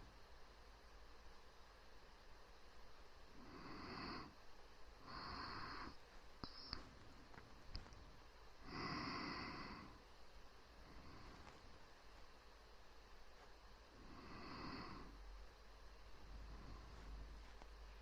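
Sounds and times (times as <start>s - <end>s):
close-miked breathing: 3.2s - 12.4s, 13.1s - 18.0s.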